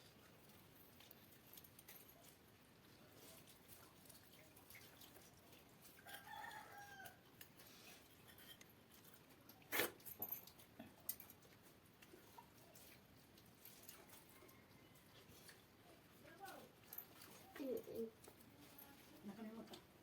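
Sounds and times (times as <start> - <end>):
rooster crowing faintly: 6.0 - 7.3.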